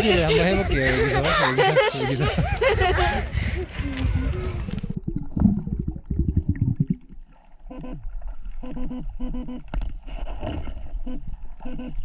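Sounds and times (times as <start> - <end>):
underwater gurgling water: 4.0 - 8.8.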